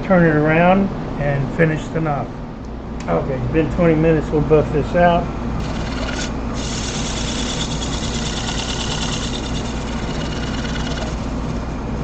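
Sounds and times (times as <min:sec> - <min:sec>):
hiss of buffing wood: 0:05.6 - 0:11.5
wood lathe running: 0:05.6 - 0:11.8.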